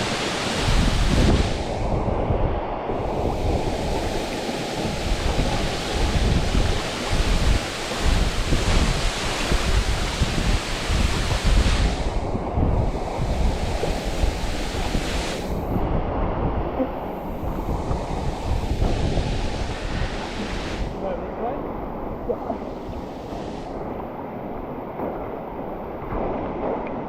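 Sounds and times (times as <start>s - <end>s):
waterfall rushing: 0.0s - 2.0s, 3.0s - 15.8s, 16.9s - 23.7s.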